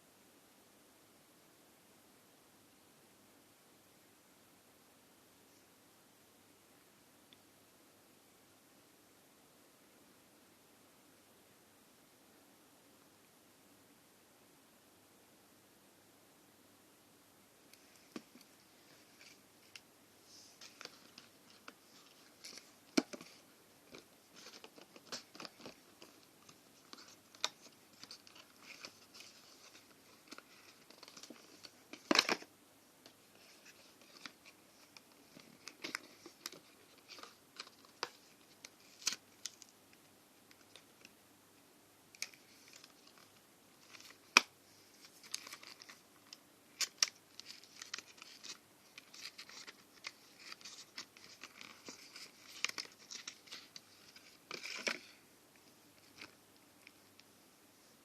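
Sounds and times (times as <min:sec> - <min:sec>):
packaging rustling and crinkling: 0:17.8 - 0:32.5, 0:42.2 - 0:55.2.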